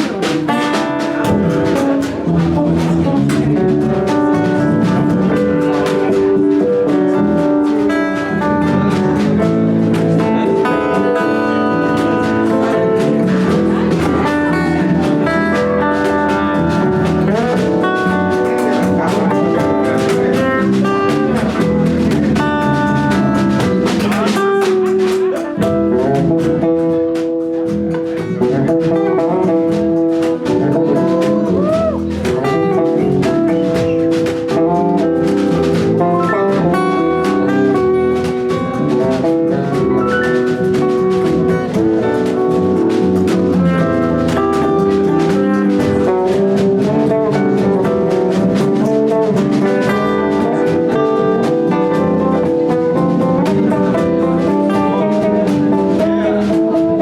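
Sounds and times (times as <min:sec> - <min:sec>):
live jazzy band playing: 0:00.0 - 0:57.0.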